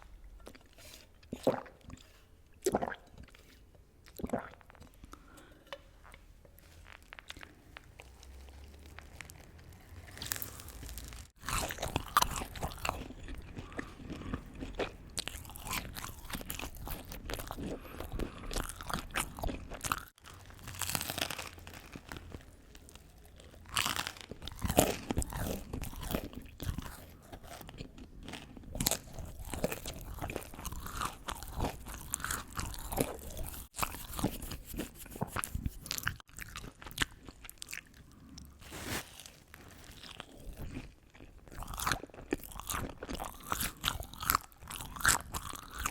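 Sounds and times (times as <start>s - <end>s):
wet mouth sounds: 4.0s - 5.2s, 29.0s - 38.3s
person chewing crunchy food: 6.8s - 45.9s.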